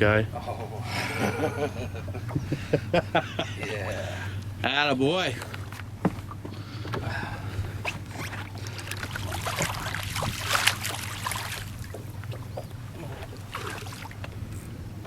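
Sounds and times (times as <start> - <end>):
low hum: 0.0 - 15.0
water splashes: 7.9 - 14.5.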